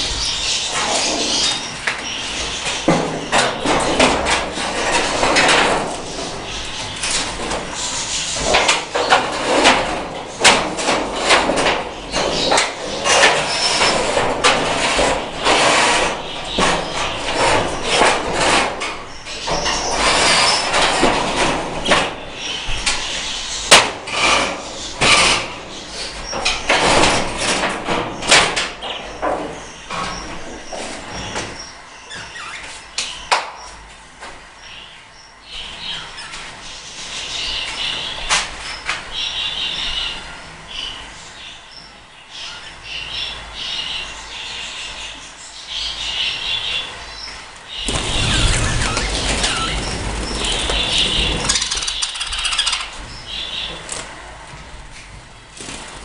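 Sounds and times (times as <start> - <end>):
knocks scrapes and clatter: 2.4 - 22.2, 23.7 - 31.5, 47.8 - 52.9
budgerigar chirps: 51.5 - 53.7.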